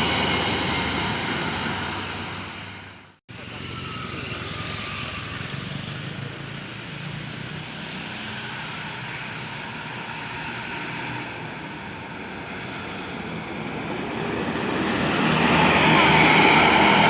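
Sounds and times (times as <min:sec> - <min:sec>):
bus diesel engine running: 0:00.0 - 0:06.9
road noise: 0:00.0 - 0:17.0.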